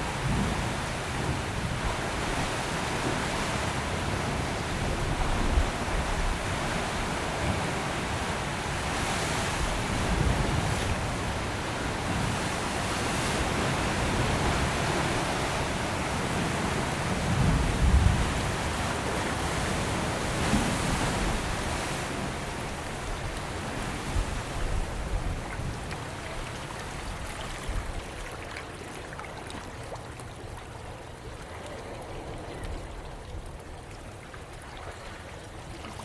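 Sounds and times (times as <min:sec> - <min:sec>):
ocean surf washing over rocks: 0:00.0 - 0:27.8.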